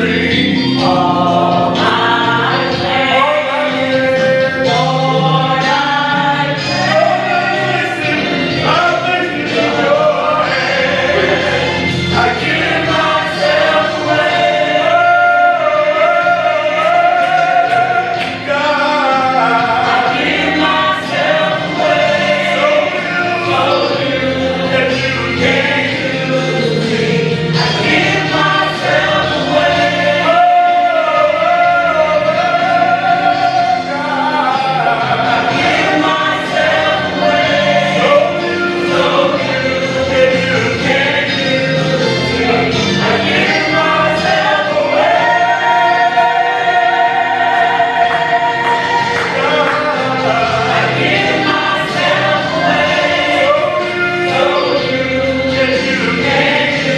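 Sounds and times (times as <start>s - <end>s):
gospel choir singing: 0.0s - 56.9s
music accompaniment: 0.0s - 56.9s.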